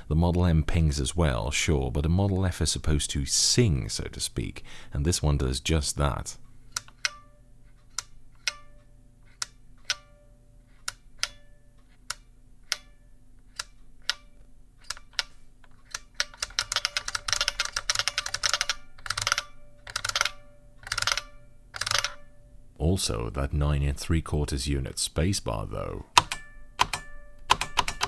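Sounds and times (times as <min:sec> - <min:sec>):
keyboard keys clacking: 0:25.7 - 0:28.0.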